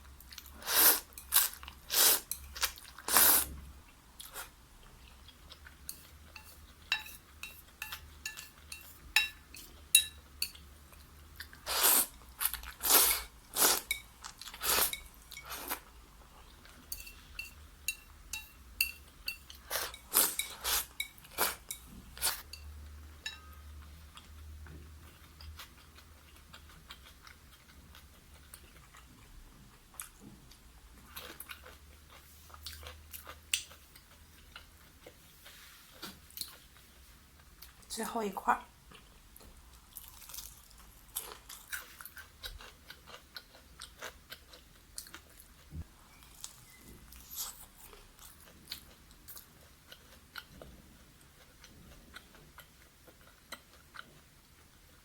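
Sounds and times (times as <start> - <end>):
quiet chewing: 38.9 - 55.0.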